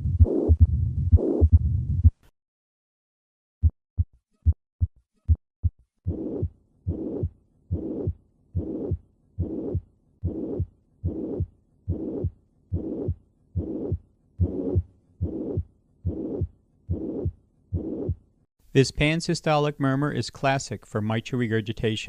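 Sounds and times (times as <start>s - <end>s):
heartbeat with murmur: 0.0s - 2.2s, 3.6s - 18.2s.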